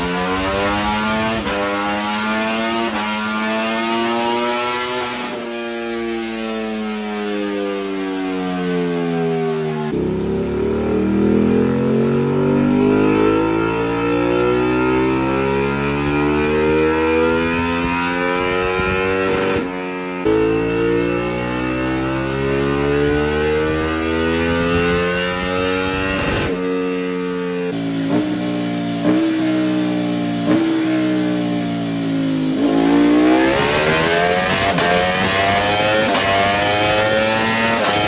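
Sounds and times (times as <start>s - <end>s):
motorcycle engine accelerating: 0.0s - 38.0s.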